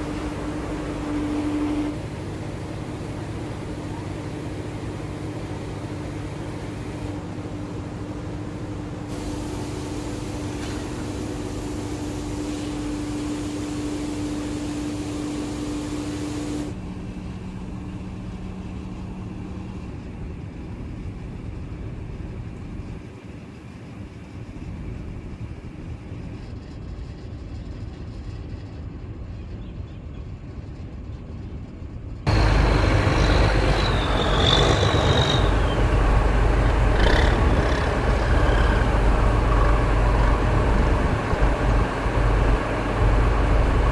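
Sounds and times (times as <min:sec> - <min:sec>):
engine and machinery humming: 0:00.0 - 0:43.9
high squeal: 0:32.3 - 0:36.6.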